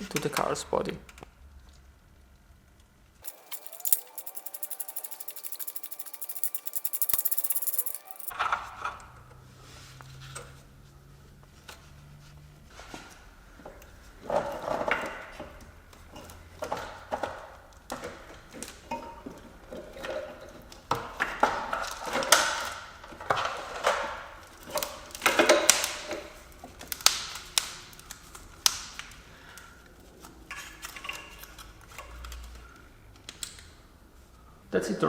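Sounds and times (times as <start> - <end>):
hand tools clinking on metal: 3.2 - 8.3.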